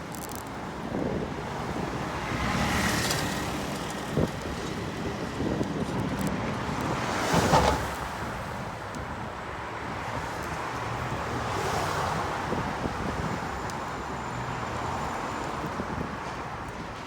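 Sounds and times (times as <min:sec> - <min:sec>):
wind buffeting microphone: 0:00.6 - 0:14.1.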